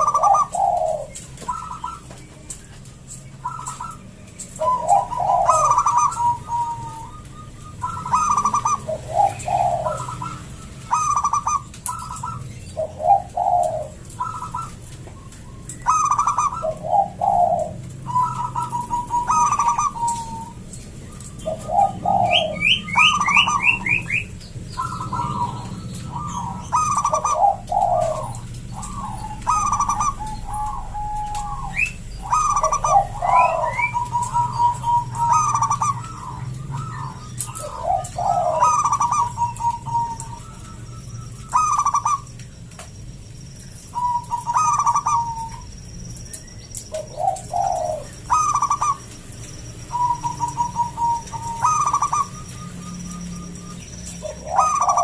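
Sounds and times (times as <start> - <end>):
dove cooing: 0.0 - 42.9, 43.7 - 45.8, 46.4 - 55.0
faint high bird chirps: 0.0 - 55.0.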